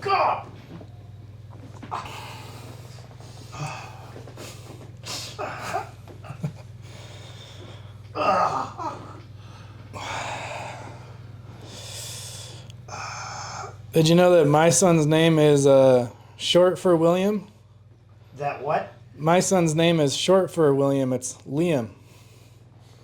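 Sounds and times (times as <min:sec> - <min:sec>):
low hum: 0:00.0 - 0:23.0
person breathing heavily: 0:01.9 - 0:06.0, 0:06.8 - 0:13.9.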